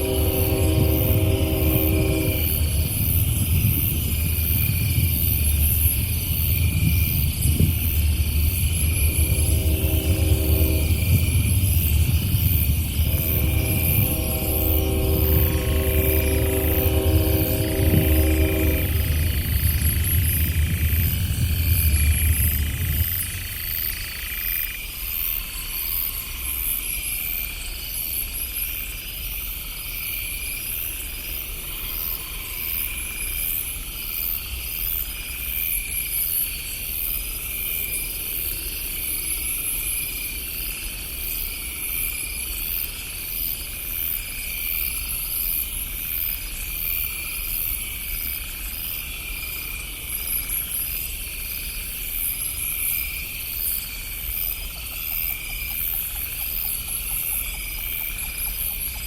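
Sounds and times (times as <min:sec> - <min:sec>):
low steady rumble: 0:00.0 - 0:24.4
night insects chirping: 0:00.0 - 0:59.0.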